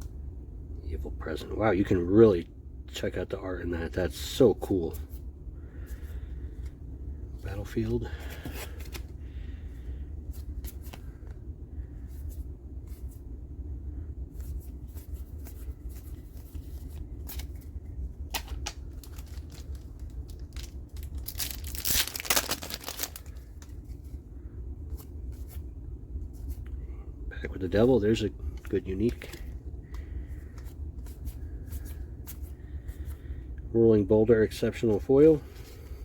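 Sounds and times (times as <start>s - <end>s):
low steady hum: 0.0s - 36.0s
cards clicking and rustling: 8.3s - 9.1s, 14.4s - 24.1s, 28.5s - 32.5s
wrapper crinkling and tearing: 18.3s - 23.7s.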